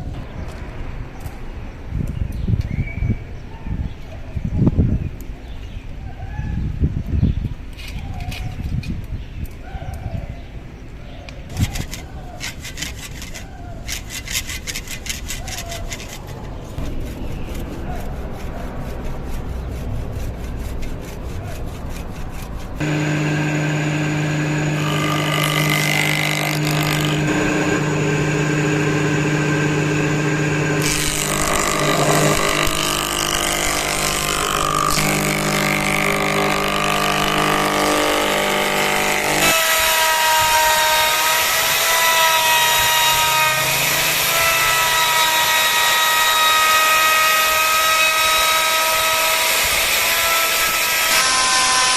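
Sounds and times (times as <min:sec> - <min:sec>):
hand tool working wood: 0:11.5 - 0:51.9
electric power tool running: 0:22.8 - 0:51.9.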